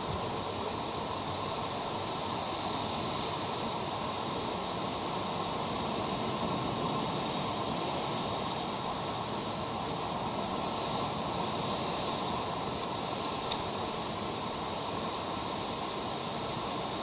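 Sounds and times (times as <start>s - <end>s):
wind: 0.0s - 17.0s.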